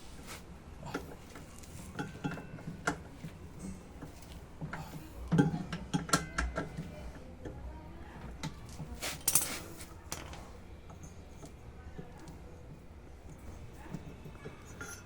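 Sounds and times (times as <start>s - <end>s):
metal parts knocking and clinking: 8.6s - 10.4s.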